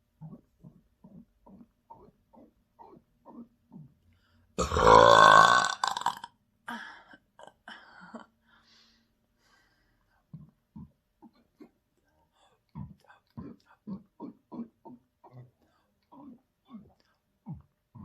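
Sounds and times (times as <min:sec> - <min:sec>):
quiet throat sounds: 0:00.0 - 0:08.6, 0:09.5 - 0:18.0
person burping loudly: 0:04.6 - 0:06.4.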